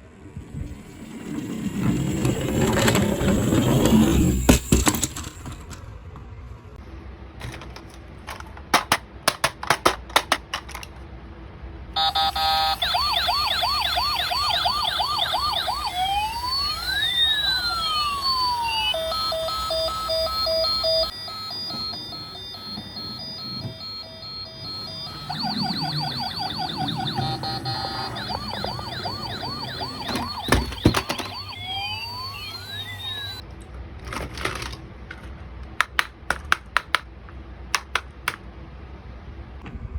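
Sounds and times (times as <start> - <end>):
toy electronic siren: 12.0 - 33.4.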